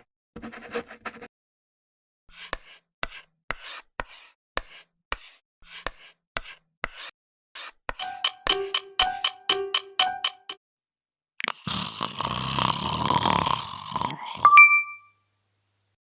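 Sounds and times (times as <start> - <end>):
short scraping strokes with taps: 2.3 - 9.5.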